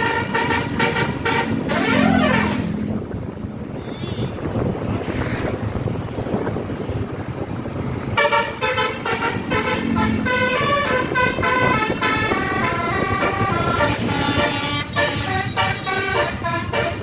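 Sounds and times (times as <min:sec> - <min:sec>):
multi-tone bus horn tune: 0:00.0 - 0:03.0, 0:08.1 - 0:17.0.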